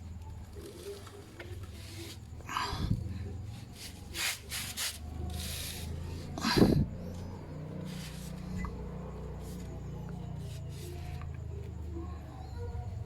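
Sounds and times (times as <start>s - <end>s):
brush scrubbing a chain: 3.6s - 6.4s.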